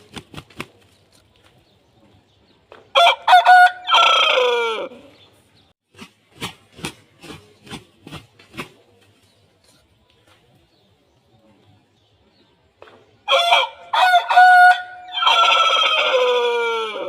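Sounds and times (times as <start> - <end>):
rooster crowing: 3.0 - 5.0, 13.3 - 17.0.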